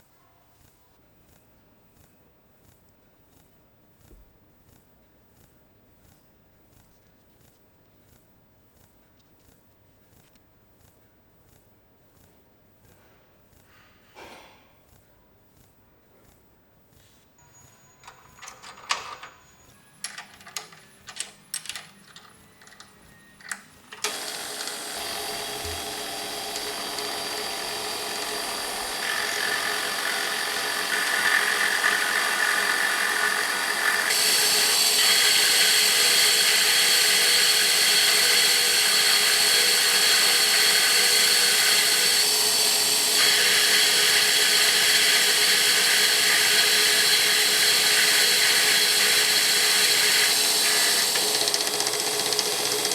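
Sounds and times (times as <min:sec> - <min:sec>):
metal parts clicking: 0:18.0 - 0:24.1
metal lathe running: 0:24.0 - 0:52.9.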